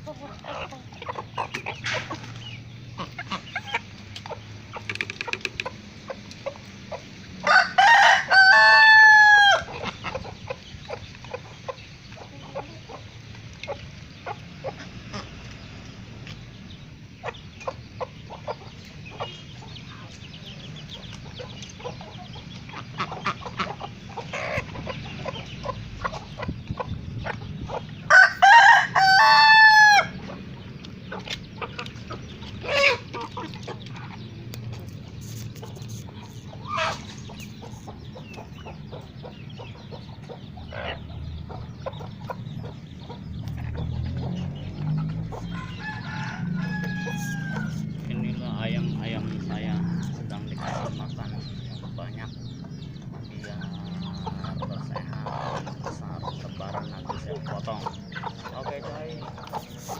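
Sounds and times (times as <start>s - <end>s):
chickens clucking: 0.0s - 59.9s
rooster crowing: 7.4s - 9.7s, 28.1s - 30.2s, 45.4s - 48.0s.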